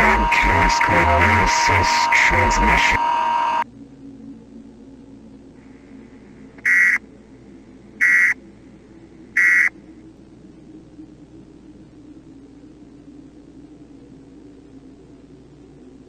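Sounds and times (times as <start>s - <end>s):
buzzy data bursts: 0.0s - 3.6s, 6.6s - 7.0s, 8.0s - 8.4s, 9.4s - 9.7s
faint steady hum: 0.0s - 16.0s.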